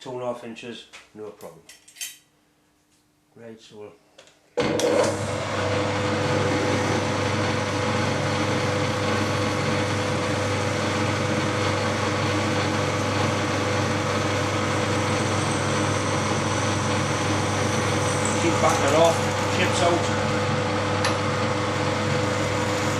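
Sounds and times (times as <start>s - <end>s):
milling machine hum: 4.6s - 22.9s.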